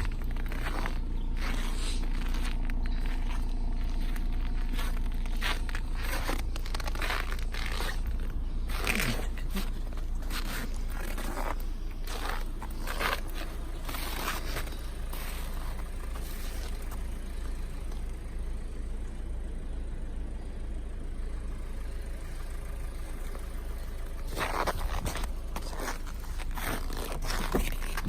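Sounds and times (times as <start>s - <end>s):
rustling or scraping: 0.0s - 17.6s, 23.1s - 28.0s
car engine rumbling: 0.0s - 28.0s.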